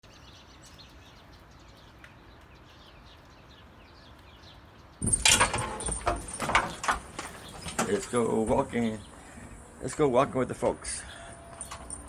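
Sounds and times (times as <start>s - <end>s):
birds chirping: 0.0s - 12.0s
loud clatter: 5.0s - 9.3s.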